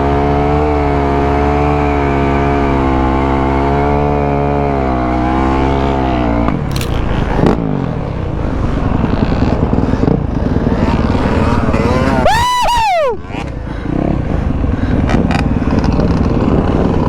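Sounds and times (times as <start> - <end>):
dirt bike engine revving: 0.0 - 17.0
high-pitched rising and falling sound: 12.0 - 13.2.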